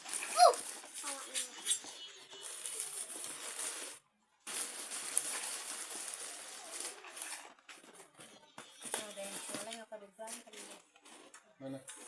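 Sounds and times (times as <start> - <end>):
plastic bags crinkling: 0.0 - 12.0.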